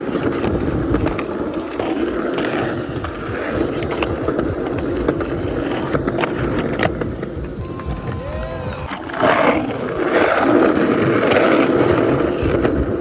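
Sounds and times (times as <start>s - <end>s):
skateboard clacking: 0.0s - 13.0s
skateboard wheels rolling on concrete: 0.0s - 13.0s.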